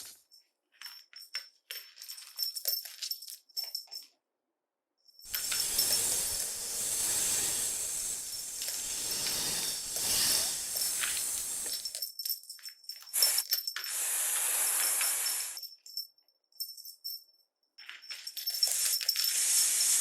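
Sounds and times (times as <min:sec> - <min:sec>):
snake hissing: 0:05.3 - 0:11.9, 0:13.9 - 0:15.6, 0:19.3 - 0:20.0
short rattling bursts: 0:05.3 - 0:12.0.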